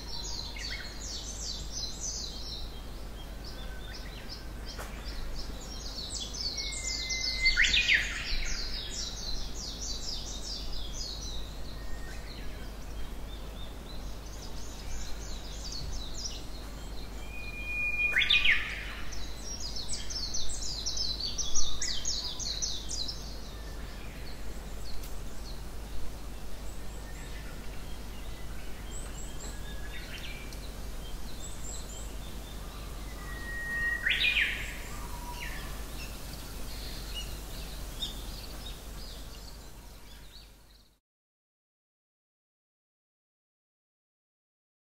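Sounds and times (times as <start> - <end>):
faint steady hiss: 0.0 - 41.0
bird whistle with sharp sweep: 17.2 - 18.7, 33.1 - 34.5.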